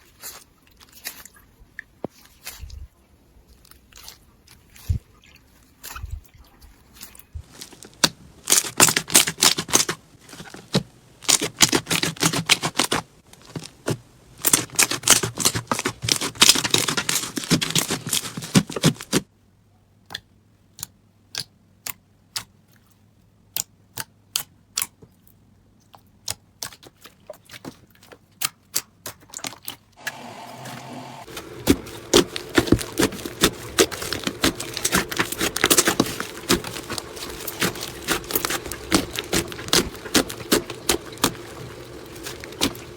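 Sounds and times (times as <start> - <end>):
crunchy slime crackling: 7.0 - 10.6, 11.2 - 19.2, 31.2 - 42.9.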